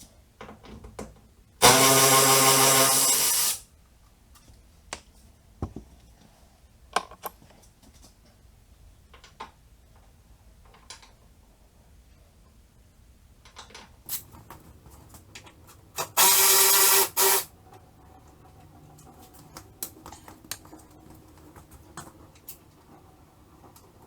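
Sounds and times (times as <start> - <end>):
power tool motor running: 1.6 - 3.6, 16.0 - 17.5.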